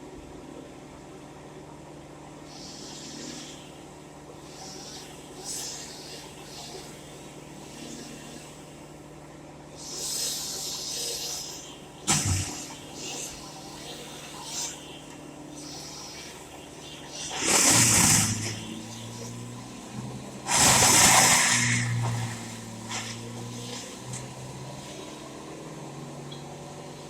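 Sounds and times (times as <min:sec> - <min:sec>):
loud rushing bursts: 0:20.5 - 0:21.9.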